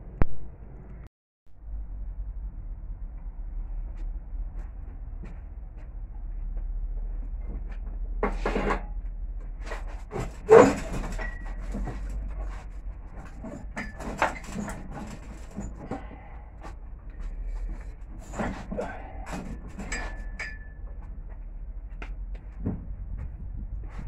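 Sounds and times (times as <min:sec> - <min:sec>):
scrap metal knocks and scrapes: 0:07.0 - 0:24.0.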